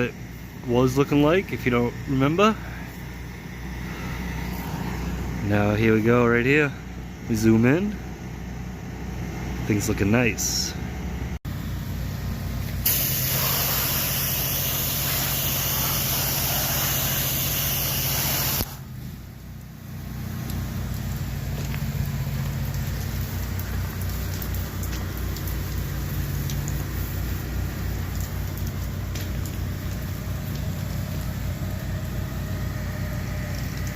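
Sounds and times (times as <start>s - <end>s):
pressure washer engine running: 0.0s - 33.9s
hiss of spraying water: 12.8s - 19.1s, 20.0s - 33.9s.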